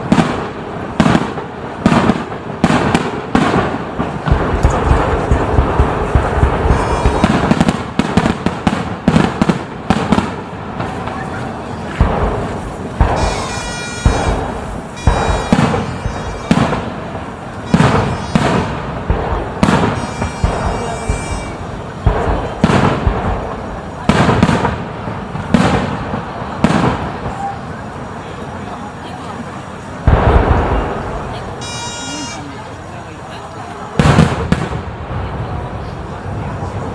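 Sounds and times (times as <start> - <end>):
fireworks booming: 0.0 - 36.9
fireworks crackling: 0.0 - 36.9
high whistling tones: 10.9 - 22.0, 30.8 - 34.0.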